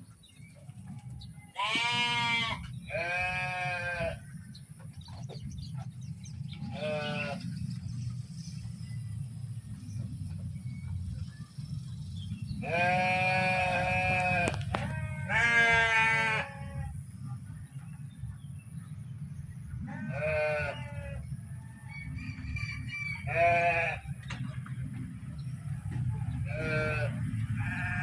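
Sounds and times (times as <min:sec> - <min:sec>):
steady low rumble: 0:00.0 - 0:28.0
sheep or goat bleating: 0:01.6 - 0:04.2, 0:06.6 - 0:07.5, 0:12.6 - 0:17.0, 0:19.9 - 0:21.3, 0:23.3 - 0:24.1, 0:26.4 - 0:28.0.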